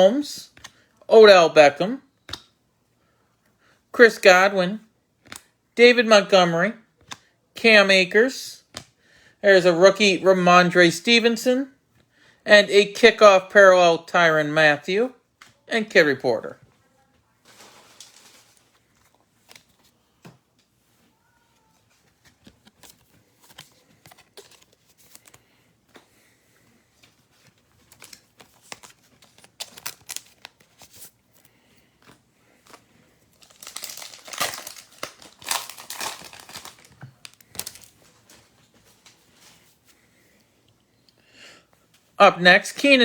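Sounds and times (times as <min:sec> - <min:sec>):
foil wrapper tearing and crinkling: 0:17.4 - 0:18.7, 0:27.9 - 0:31.2, 0:33.3 - 0:38.1.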